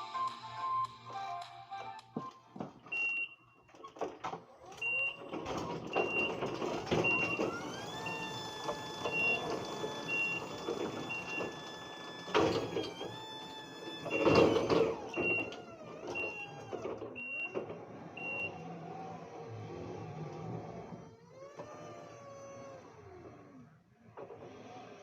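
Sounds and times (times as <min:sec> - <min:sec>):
vehicle back-up alarm beeping: 0:02.8 - 0:03.6, 0:04.7 - 0:12.6, 0:14.0 - 0:17.6, 0:18.2 - 0:18.7.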